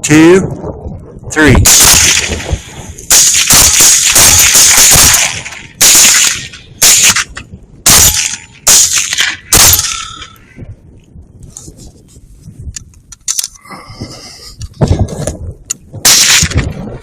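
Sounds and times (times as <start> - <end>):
rifle shots: 1.6 - 10.4, 16.0 - 17.0.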